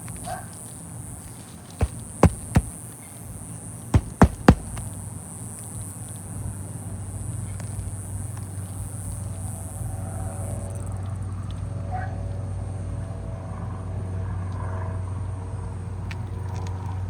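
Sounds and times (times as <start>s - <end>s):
hammer striking nails: 1.8s - 2.7s, 4.0s - 4.9s.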